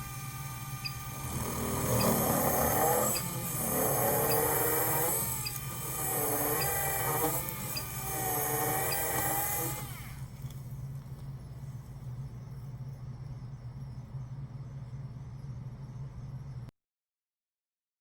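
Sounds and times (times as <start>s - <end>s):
dental drill whine: 0.0s - 10.4s.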